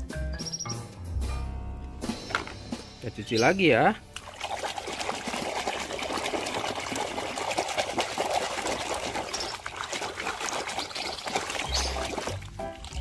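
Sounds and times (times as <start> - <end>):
water pouring and splashing: 4.1 - 13.0.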